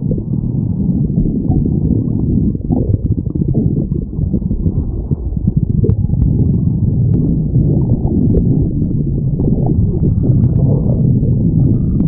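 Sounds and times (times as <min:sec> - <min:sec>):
stomach growling: 0:00.0 - 0:12.0
small clicks and pops: 0:02.6 - 0:07.3, 0:09.6 - 0:10.8.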